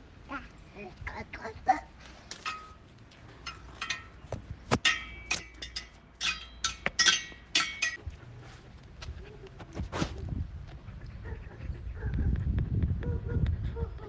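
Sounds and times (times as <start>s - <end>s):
light metallic clinks: 3.4s - 8.0s.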